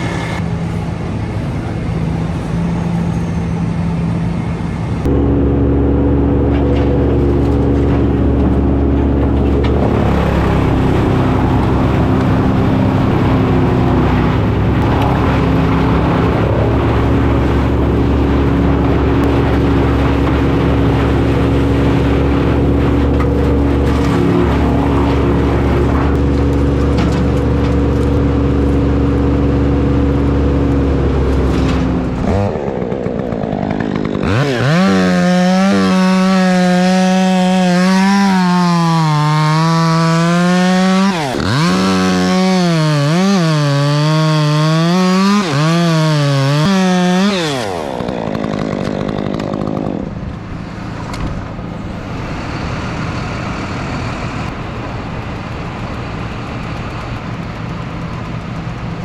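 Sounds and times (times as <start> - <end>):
chainsaw cutting wood: 0.0 - 0.4, 5.1 - 52.3
low engine hum: 0.0 - 37.6, 50.0 - 59.0.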